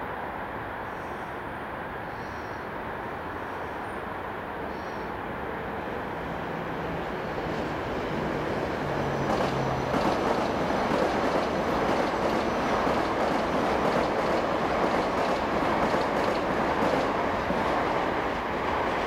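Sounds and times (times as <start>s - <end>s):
train wheels rumbling on rails: 6.2s - 19.0s
wheels clicking over rail joints: 8.8s - 17.8s.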